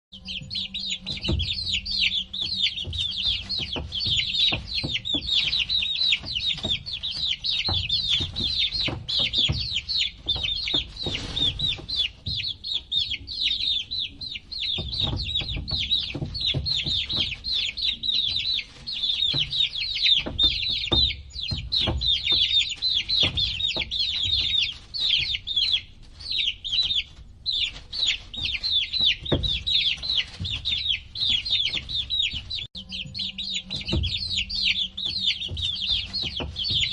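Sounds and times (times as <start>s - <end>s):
baby chicks peeping: 0.2s - 36.9s
soft low knocks and bumps: 0.3s - 13.4s, 28.2s - 36.9s.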